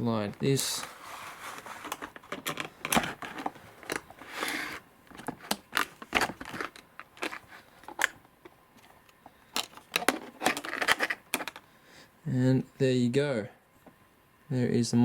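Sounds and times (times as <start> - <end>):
packaging rustle: 0.7 - 8.2
plastic crinkling: 1.0 - 8.2.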